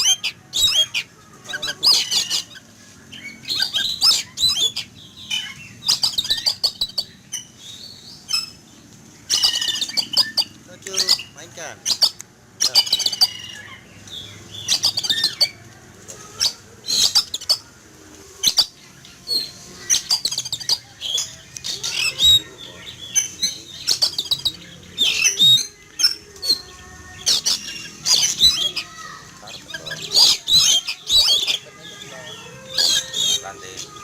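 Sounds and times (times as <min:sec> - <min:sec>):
bird singing whistled and scratchy notes: 0:23.1 - 0:28.9, 0:29.5 - 0:34.0.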